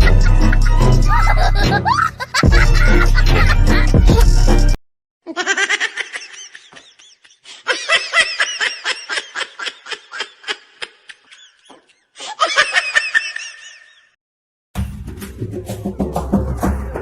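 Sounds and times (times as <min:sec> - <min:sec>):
high-pitched giggling: 0:00.0 - 0:04.3, 0:05.3 - 0:14.1.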